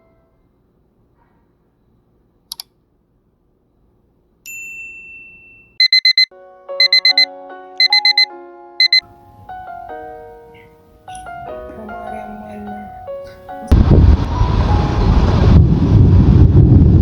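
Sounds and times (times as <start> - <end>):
ringing ding: 4.5 - 5.8
alarm clock beeping: 5.8 - 9.0
soft piano music: 6.3 - 15.8.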